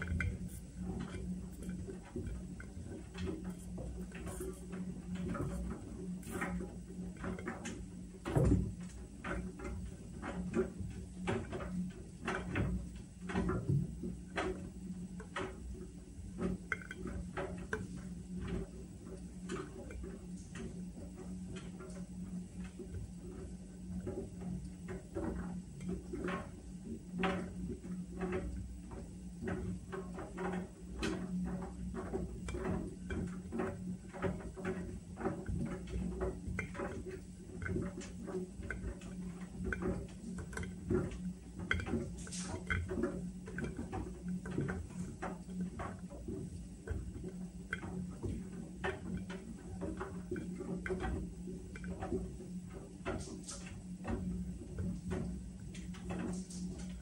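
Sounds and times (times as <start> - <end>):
washing machine humming: 0.0 - 57.0
light clicks and taps: 32.0 - 52.2.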